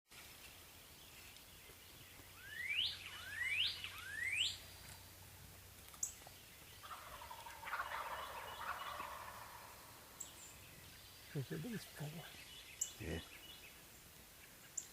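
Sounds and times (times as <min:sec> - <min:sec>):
songbird whistling rising notes: 0:02.4 - 0:04.6
turkey gobbling: 0:06.8 - 0:10.3.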